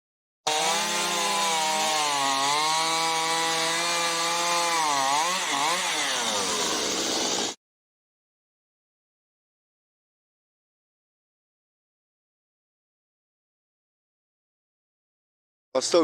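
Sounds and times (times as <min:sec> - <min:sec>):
chainsaw whining at high revs: 0:00.5 - 0:07.6.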